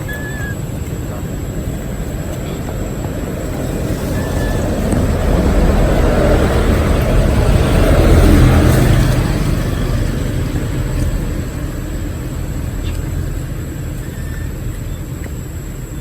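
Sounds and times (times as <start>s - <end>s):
loud low rumble: 0.0s - 15.7s.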